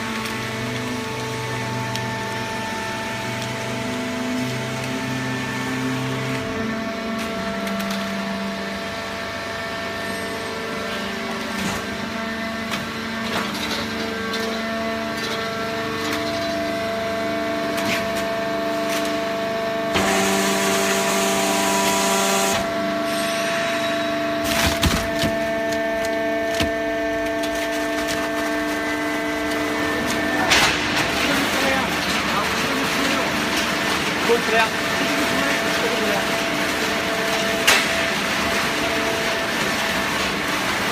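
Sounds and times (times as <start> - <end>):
baling press motor hum and whine: 0.0 - 40.9
paper crackling and clicking: 24.4 - 37.9.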